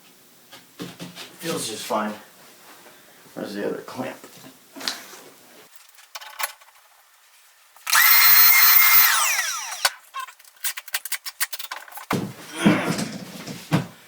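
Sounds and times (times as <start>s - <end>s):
power drill motor whine: 7.8s - 10.0s.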